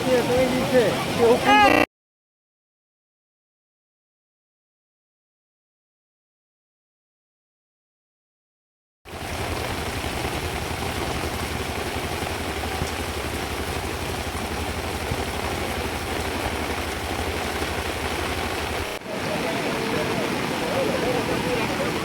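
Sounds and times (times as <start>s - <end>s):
engine running with hiss: 9.1s - 19.2s.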